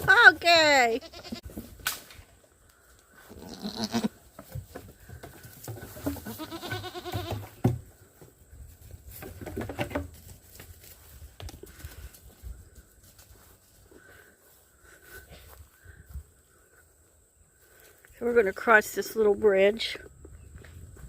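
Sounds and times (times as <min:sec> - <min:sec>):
goats bleating: 0:00.9 - 0:01.4, 0:03.3 - 0:04.2, 0:06.2 - 0:07.5.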